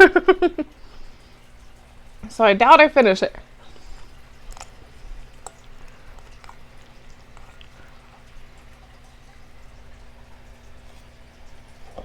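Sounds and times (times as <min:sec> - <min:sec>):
low steady hum: 0:00.0 - 0:12.0
wet chewing clicks: 0:03.4 - 0:12.0.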